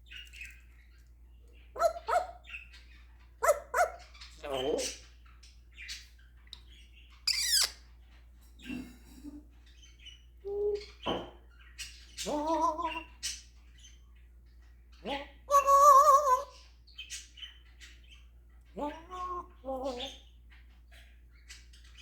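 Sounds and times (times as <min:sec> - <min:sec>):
parrot squawks and whistled calls: 0:01.8 - 0:02.6, 0:07.3 - 0:07.8.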